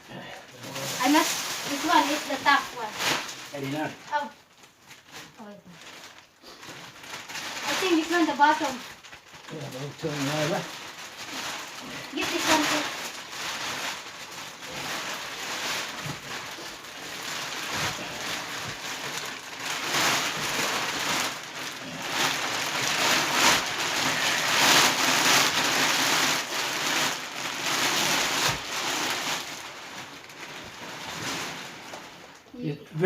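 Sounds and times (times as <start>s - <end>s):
plastic wrapping rustling: 0.0s - 33.0s.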